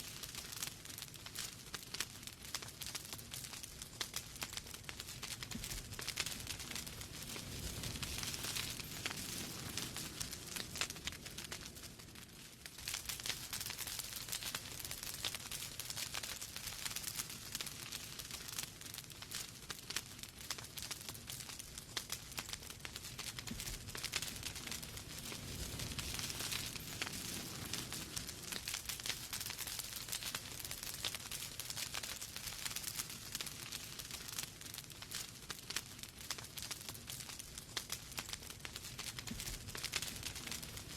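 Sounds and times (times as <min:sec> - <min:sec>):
low rumble of flames: 0:00.0 - 0:40.9
wood fire crackling and popping: 0:00.0 - 0:40.9.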